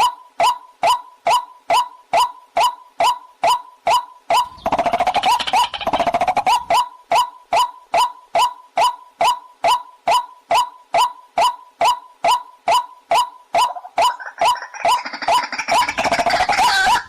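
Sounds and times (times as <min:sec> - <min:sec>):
bird calling sharp notes: 0:00.9 - 0:17.0
bird chattering: 0:04.3 - 0:06.9, 0:13.2 - 0:17.0.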